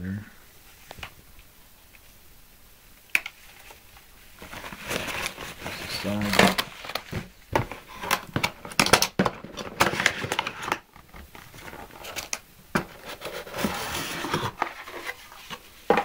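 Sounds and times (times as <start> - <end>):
packaging rustling and crinkling: 3.2 - 16.0.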